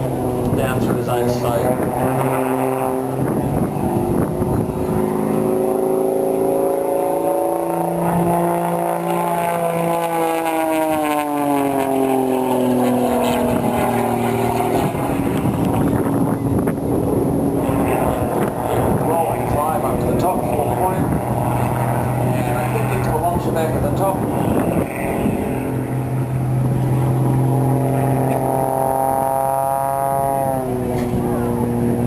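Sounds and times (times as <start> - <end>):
propeller plane engine droning: 0.0 - 32.0.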